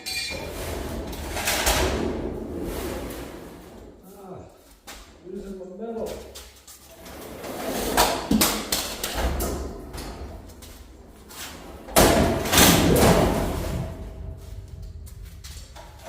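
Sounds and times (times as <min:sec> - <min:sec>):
sheet metal knocks and clatters: 0:11.9 - 0:13.9.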